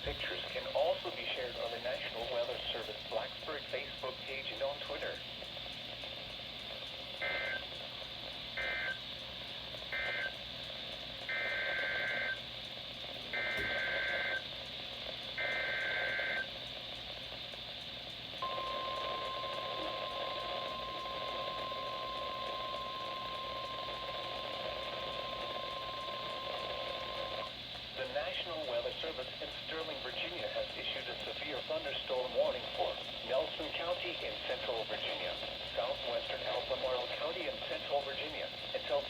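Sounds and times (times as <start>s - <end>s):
radio hiss: 0.0s - 5.3s, 18.4s - 39.0s
steady alarm tone: 7.1s - 17.3s, 18.3s - 37.5s.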